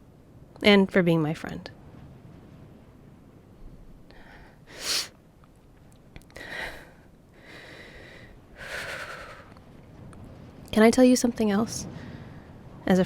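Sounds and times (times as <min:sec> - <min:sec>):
woman breathing unsteadily: 0:04.1 - 0:05.2, 0:06.3 - 0:09.6.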